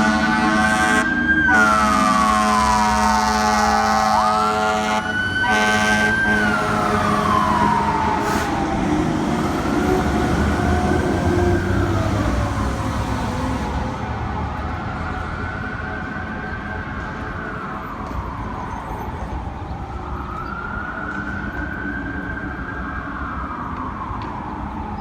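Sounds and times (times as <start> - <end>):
fire truck air horn blasting: 0.0 - 9.0
truck engine rumble: 0.0 - 25.0
wailing siren: 0.0 - 25.0.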